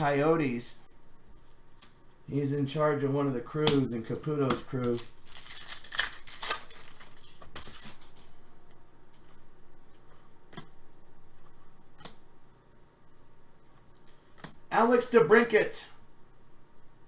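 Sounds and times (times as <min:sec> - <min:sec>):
cards rustling and scraping: 0:04.6 - 0:08.4.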